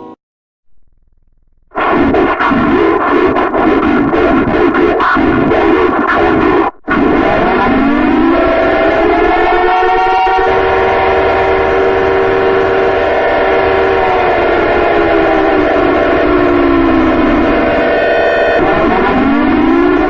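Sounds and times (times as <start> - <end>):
steady low rumble: 0.7 - 2.8
warning siren chord: 6.9 - 20.0.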